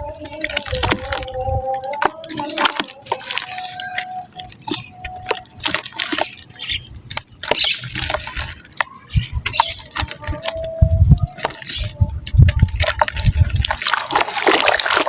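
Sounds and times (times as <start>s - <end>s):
mud crumbling into water: 0.0s - 15.0s.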